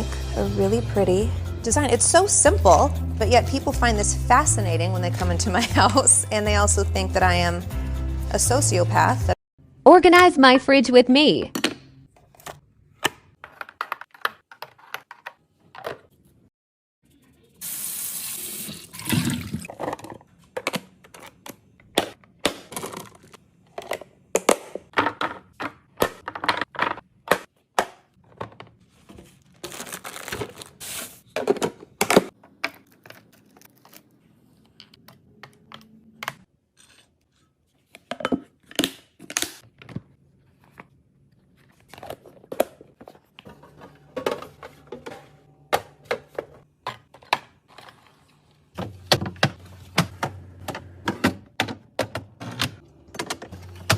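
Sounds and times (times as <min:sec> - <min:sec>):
containers and packaging clattering: 0:19.0 - 0:33.3, 0:41.8 - 0:48.2, 0:48.8 - 0:53.9.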